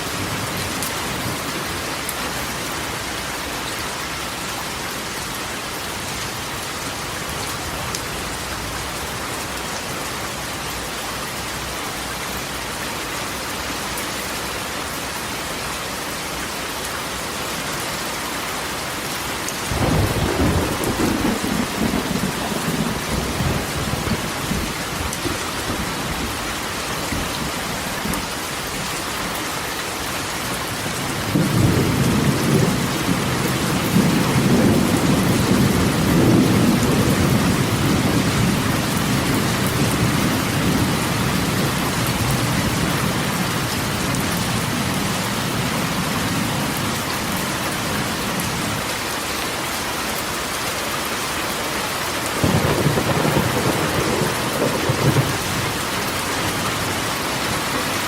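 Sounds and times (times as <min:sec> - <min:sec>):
rain on a metal roof: 0:00.0 - 0:58.0
thunder rumbling: 0:19.7 - 0:26.5, 0:31.2 - 0:46.9, 0:52.4 - 0:57.2.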